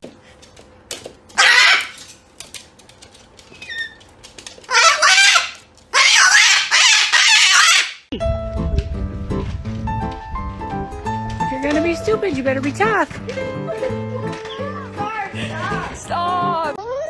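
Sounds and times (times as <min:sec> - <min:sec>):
harsh bird calls: 0:01.4 - 0:02.0, 0:04.7 - 0:08.1.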